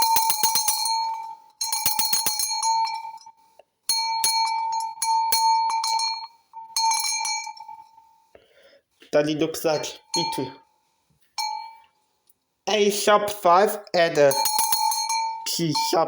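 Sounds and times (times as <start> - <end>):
metal bell shaken: 0.0 - 7.9, 10.0 - 10.6, 11.4 - 11.8, 14.1 - 16.0.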